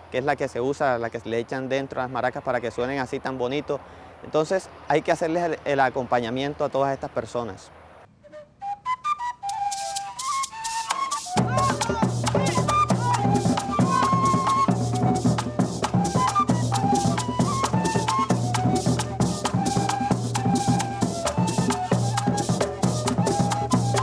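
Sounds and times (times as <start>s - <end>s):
flute melody: 8.2s - 24.0s
drums: 9.3s - 24.0s
maracas shaking: 9.3s - 24.0s.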